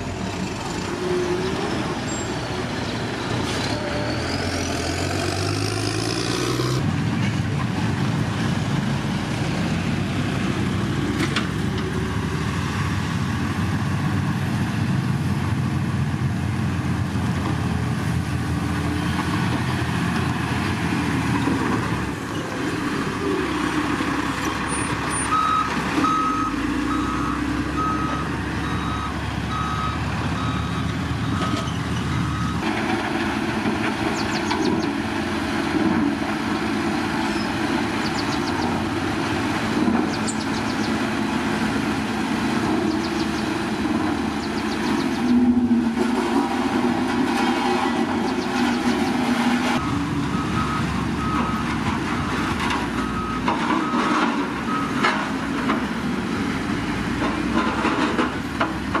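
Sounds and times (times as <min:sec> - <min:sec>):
heavy diesel machinery: 0:00.0 - 0:59.0
machinery working gravel: 0:00.0 - 0:59.0
reversing alarm beeping: 0:25.3 - 0:32.6, 0:49.8 - 0:52.3.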